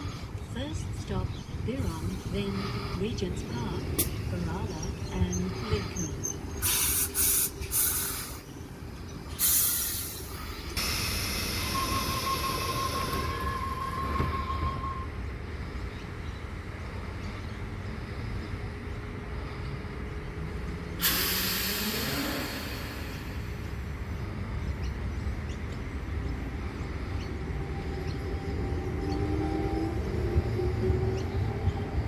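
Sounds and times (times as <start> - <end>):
train air hissing: 5.5 - 8.7, 9.3 - 14.3, 20.9 - 24.4
train motor whine rising: 9.6 - 15.0, 21.0 - 23.8.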